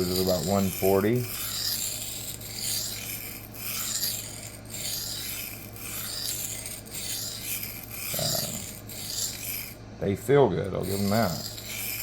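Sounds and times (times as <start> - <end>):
knife scraping on sharpening plate: 0.0 - 9.8, 10.8 - 12.0.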